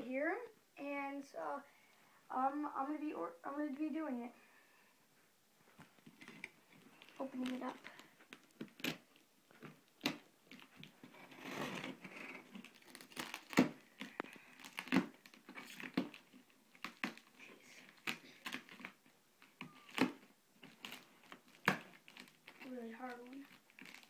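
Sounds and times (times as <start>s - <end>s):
cardboard and packaging rustling: 5.6s - 24.0s
cardboard tearing: 8.6s - 19.0s, 19.7s - 24.0s.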